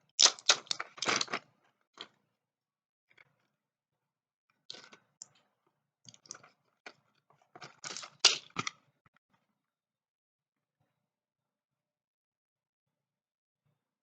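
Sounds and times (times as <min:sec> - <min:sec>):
packaging crackling and clicking: 0:00.2 - 0:01.4, 0:07.6 - 0:08.7.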